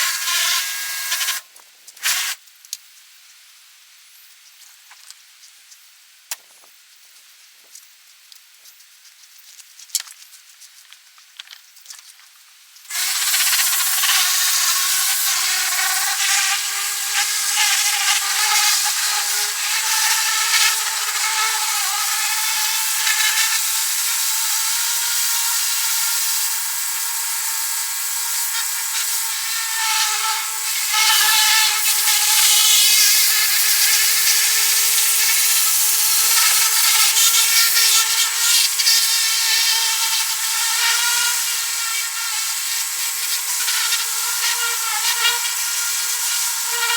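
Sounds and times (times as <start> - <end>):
power tool whining: 0.0 - 1.4, 12.9 - 46.9.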